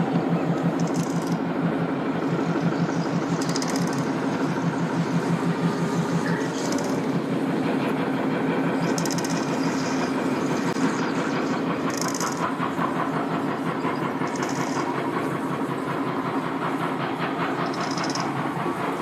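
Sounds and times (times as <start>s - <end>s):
boat engine running: 0.0s - 19.0s.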